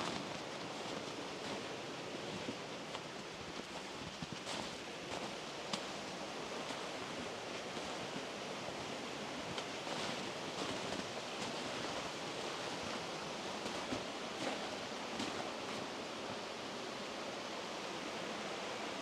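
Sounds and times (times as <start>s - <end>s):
flowing water rushing: 0.0s - 19.0s.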